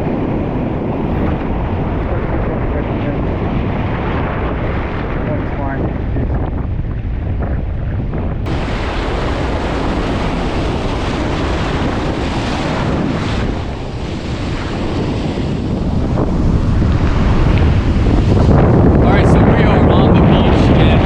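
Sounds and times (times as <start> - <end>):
wind buffeting microphone: 0.0 - 21.0
ocean surf breaking: 8.4 - 21.0.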